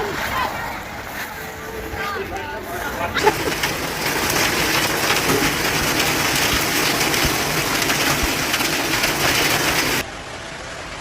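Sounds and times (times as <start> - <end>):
hail and heavy rain: 3.1 - 10.0.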